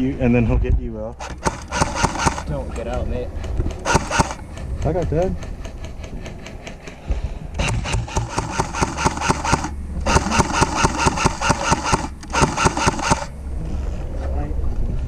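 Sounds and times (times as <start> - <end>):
airsoft rifle rapid firing: 1.2 - 2.6, 3.8 - 4.5, 7.6 - 13.3.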